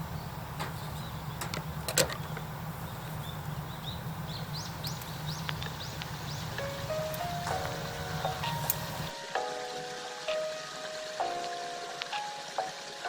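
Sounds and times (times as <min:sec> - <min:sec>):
bird chirping: 0:00.0 - 0:09.1
steady low rumble: 0:00.0 - 0:09.1.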